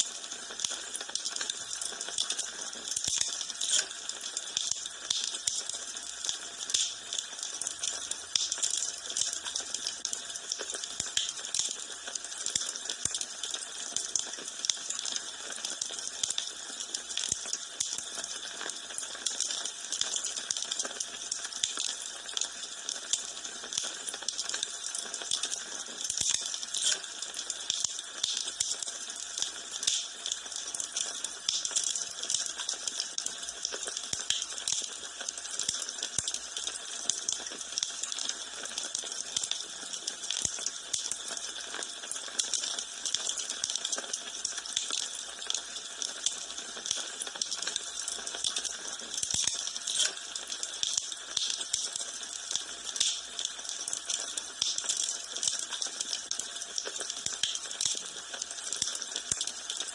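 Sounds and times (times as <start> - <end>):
wood fire crackling: 0.5 - 15.0, 23.2 - 28.8, 29.4 - 36.8, 49.1 - 54.8.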